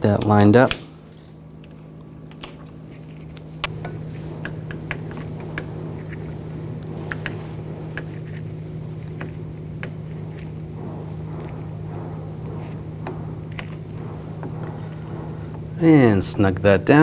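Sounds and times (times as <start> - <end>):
hand tools clicking and tapping: 0.0 - 6.2
steady low hum: 0.0 - 17.0.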